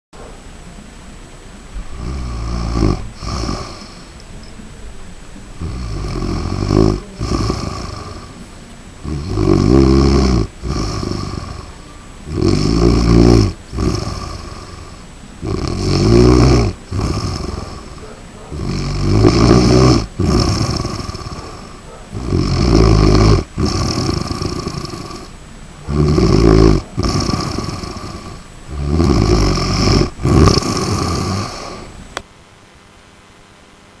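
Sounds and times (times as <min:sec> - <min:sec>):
dog snoring: 0:01.8 - 0:04.1, 0:05.6 - 0:08.4, 0:09.0 - 0:32.0.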